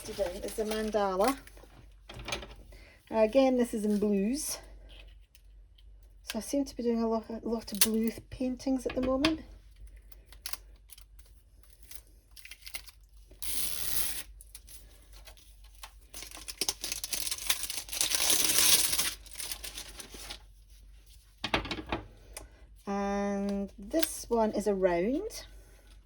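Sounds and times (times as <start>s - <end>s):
packaging tearing and crinkling: 10.4s - 20.5s.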